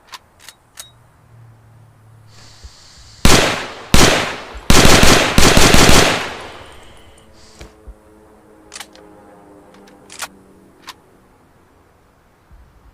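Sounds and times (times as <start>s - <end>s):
rifle firing rapid shots: 3.2s - 6.7s.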